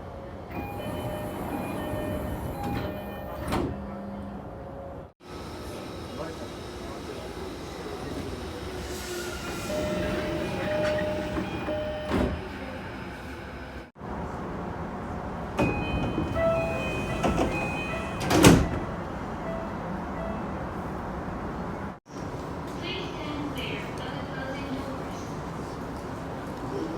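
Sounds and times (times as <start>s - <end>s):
electronic train door chime: 0.5s - 4.0s, 9.6s - 12.6s, 15.6s - 20.5s.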